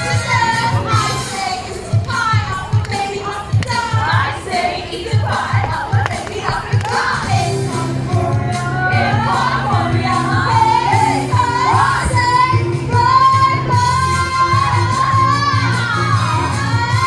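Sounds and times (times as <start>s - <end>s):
steady bass line: 5.1s - 17.0s.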